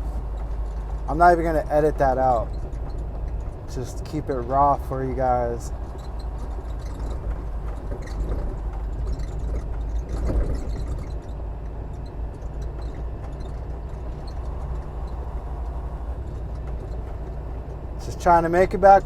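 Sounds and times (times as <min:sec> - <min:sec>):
road noise: 0:00.0 - 0:19.0
truck diesel engine running: 0:00.0 - 0:19.0.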